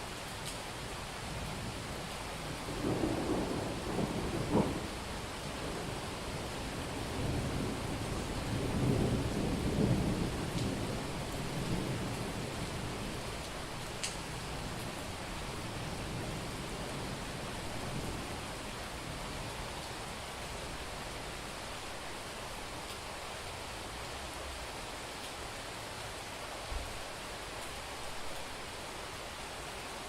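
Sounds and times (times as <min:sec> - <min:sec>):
heavy rain: 0:00.0 - 0:30.0
thunder rumbling: 0:02.5 - 0:13.2.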